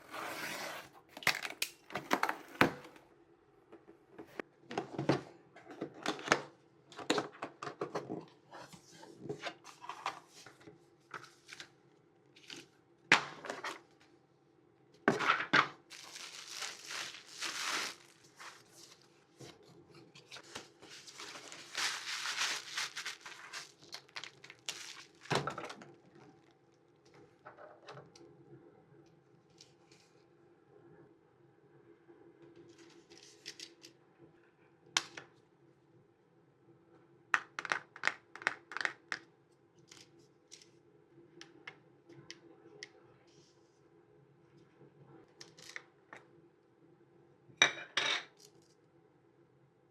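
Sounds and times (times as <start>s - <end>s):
wrapping crinkling and rustling: 15.9s - 26.5s.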